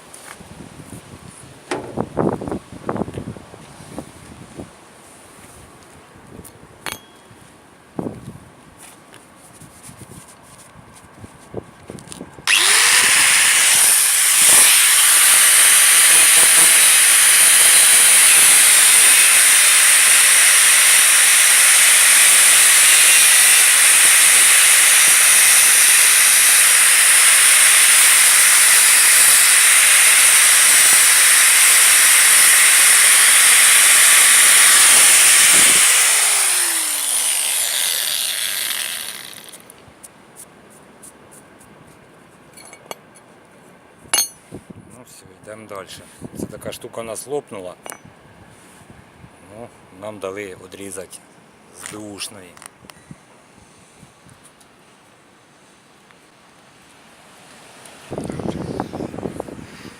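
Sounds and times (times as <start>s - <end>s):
electric power tool whining: 12.5s - 39.6s.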